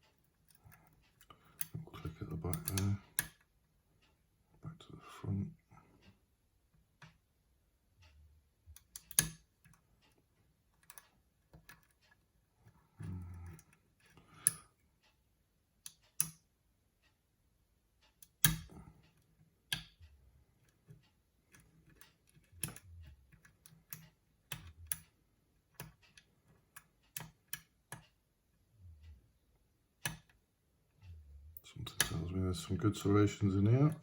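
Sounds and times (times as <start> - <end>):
lock pick clicking pins: 2.4 - 3.4, 8.7 - 14.6, 15.8 - 16.4, 18.2 - 18.9, 19.7 - 20.0, 20.6 - 28.2, 30.0 - 30.4.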